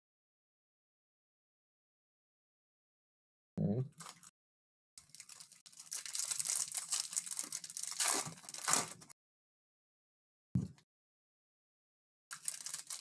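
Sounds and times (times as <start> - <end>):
wrapper tearing and crinkling: 4.0 - 4.3, 5.0 - 9.1, 12.3 - 13.0.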